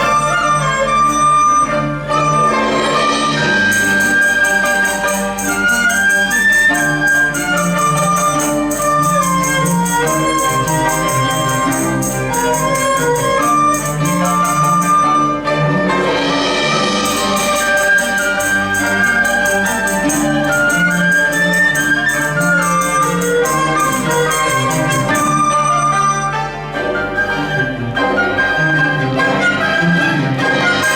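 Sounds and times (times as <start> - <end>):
held melody lines: 0.0 - 16.2, 16.8 - 30.9
rapid plucked notes: 2.9 - 15.2, 16.7 - 25.8.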